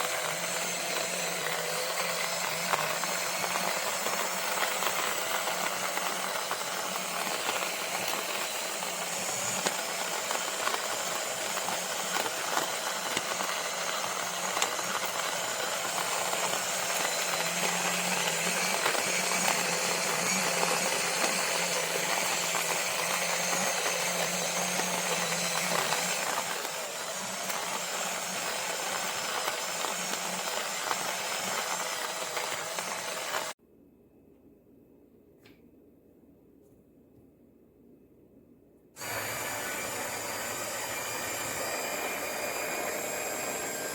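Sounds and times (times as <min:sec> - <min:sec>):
coffee grinder running: 0:00.0 - 0:33.6, 0:39.0 - 0:43.9.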